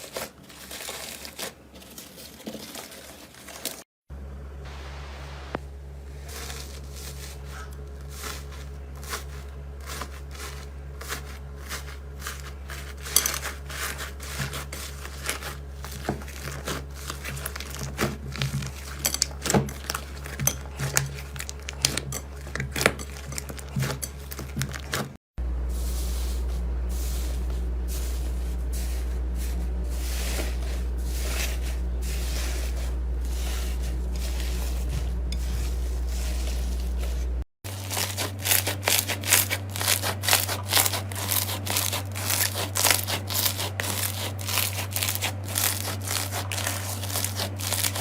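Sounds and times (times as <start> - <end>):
low hum: 4.1 - 48.0
slime crackling and popping: 37.7 - 48.0.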